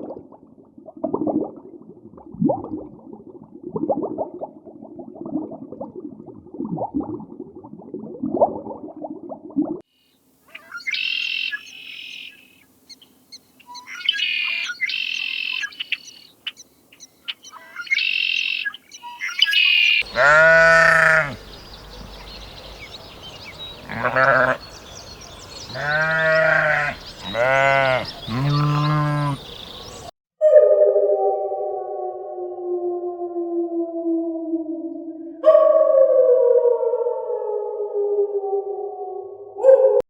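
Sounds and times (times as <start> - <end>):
high-pitched chirping calls: 10.5 - 20.4
sheep or goats bleating: 20.0 - 21.4, 23.9 - 24.6, 25.7 - 29.4.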